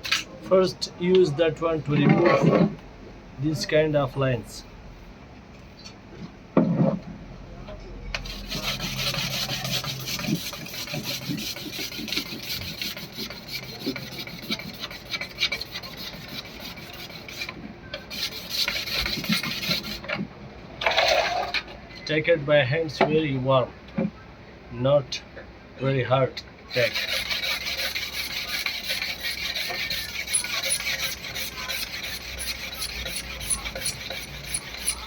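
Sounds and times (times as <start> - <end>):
hand sanding plastic: 8.2 - 20.1, 26.7 - 35.0.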